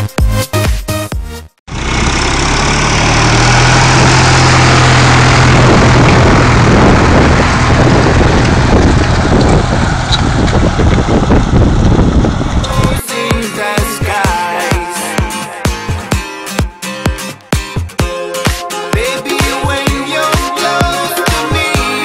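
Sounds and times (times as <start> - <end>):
tractor diesel engine under load: 1.7 - 16.1.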